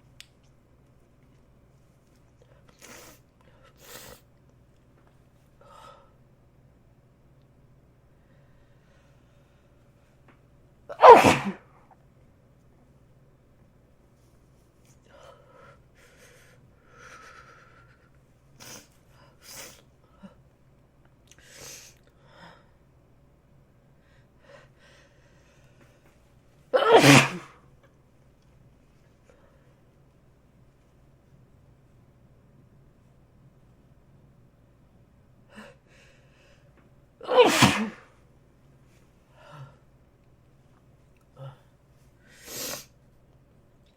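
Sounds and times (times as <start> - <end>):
person sniffing: 2.8 - 4.3, 10.9 - 11.6, 18.6 - 19.8, 37.3 - 38.1, 42.3 - 43.0
person sneezing: 10.9 - 11.7, 26.8 - 27.6, 37.2 - 38.2, 42.4 - 42.9.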